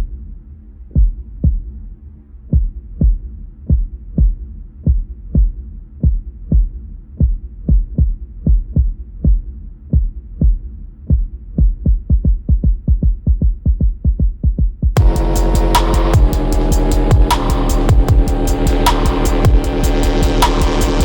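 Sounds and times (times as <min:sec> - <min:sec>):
heartbeat thumps: 0:00.0 - 0:21.0
low hum: 0:15.0 - 0:21.0.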